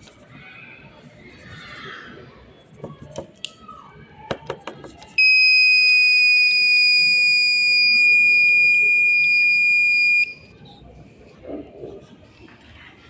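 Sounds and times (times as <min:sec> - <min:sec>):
piezo buzzer alarm tone: 0:05.2 - 0:10.4.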